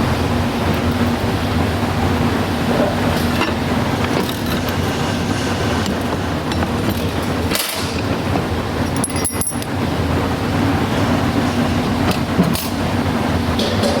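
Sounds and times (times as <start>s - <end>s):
workshop background noise: 0.0s - 14.0s
metal parts clinking: 9.0s - 9.7s.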